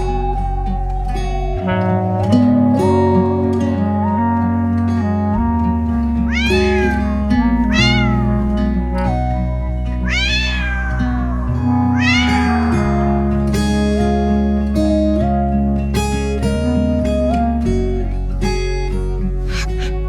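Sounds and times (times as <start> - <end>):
cat meowing: 0.0 - 2.1, 6.2 - 9.4, 10.0 - 13.4
acoustic guitar music: 0.0 - 20.0.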